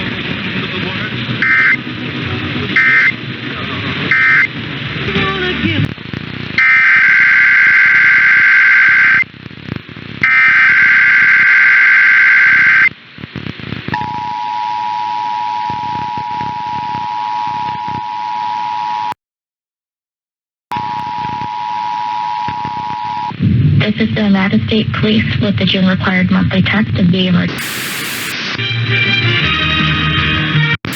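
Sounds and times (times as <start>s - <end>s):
two-tone attention signal: 1.4s - 1.8s, 2.8s - 3.2s, 4.1s - 4.5s
warbling digital header bursts: 27.6s - 28.4s.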